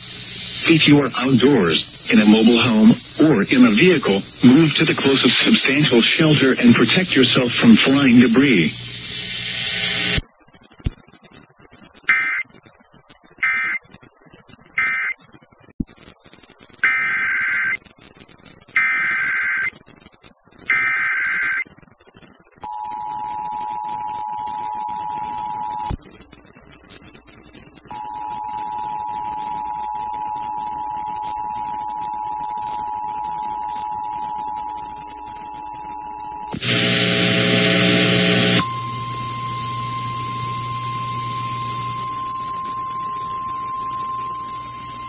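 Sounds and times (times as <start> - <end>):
screeching data bursts: 12.1 - 12.5, 13.4 - 13.8, 14.8 - 15.2, 16.8 - 17.8, 18.8 - 19.8, 20.5 - 21.8, 27.8 - 45.0
buzzy burst: 36.5 - 45.0.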